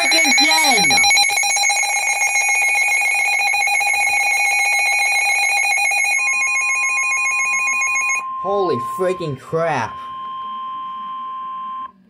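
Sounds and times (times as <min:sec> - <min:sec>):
pure tone: 0:00.0 - 0:02.2, 0:06.2 - 0:12.0
harsh two-tone alarm: 0:00.0 - 0:11.9.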